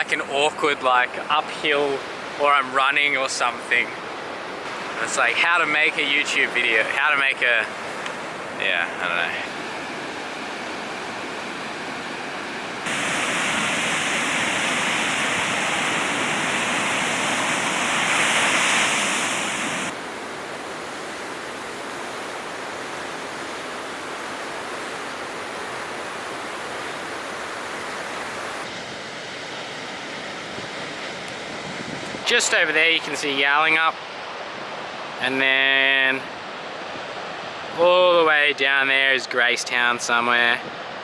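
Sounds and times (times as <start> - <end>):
ocean surf rushing: 0.0 - 24.4.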